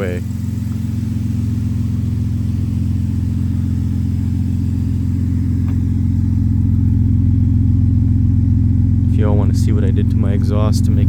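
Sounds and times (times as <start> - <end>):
car engine droning through exhaust: 0.0 - 11.0.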